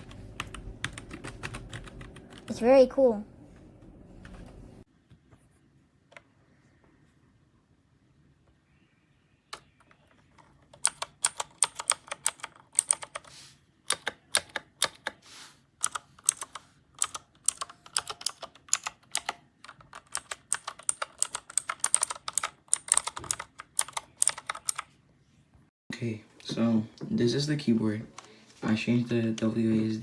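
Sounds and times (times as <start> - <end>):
mechanical keyboard clicking: 10.4 - 13.3, 13.9 - 15.2, 15.8 - 24.9.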